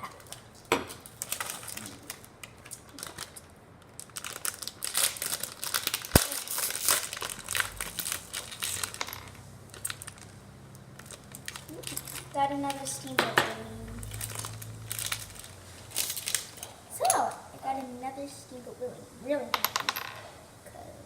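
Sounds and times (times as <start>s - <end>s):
plastic bag snapping: 0.2s - 10.4s, 11.0s - 13.4s, 14.0s - 16.7s
plastic bag crinkling: 0.2s - 16.8s.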